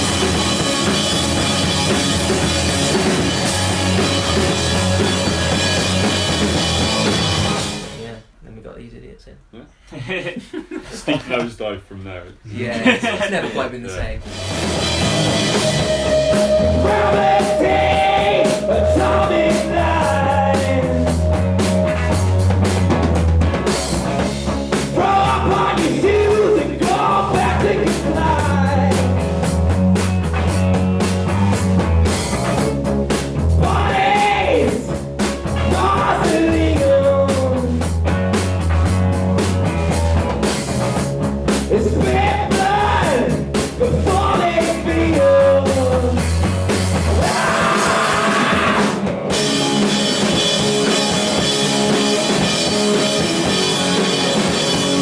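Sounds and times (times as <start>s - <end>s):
grunge rock band playing: 0.0s - 8.1s, 14.2s - 55.0s
person singing: 14.9s - 22.4s, 25.0s - 29.2s, 33.6s - 34.9s, 35.7s - 37.8s, 41.8s - 46.2s, 47.2s - 49.1s.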